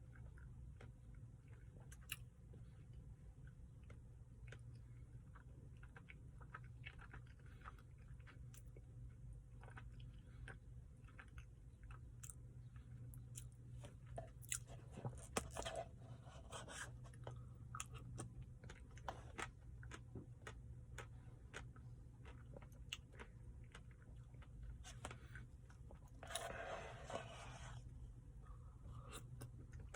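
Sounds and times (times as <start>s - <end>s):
chewing and crunching ice cream: 0.0s - 27.2s, 27.8s - 29.9s
low steady hum: 0.0s - 29.9s.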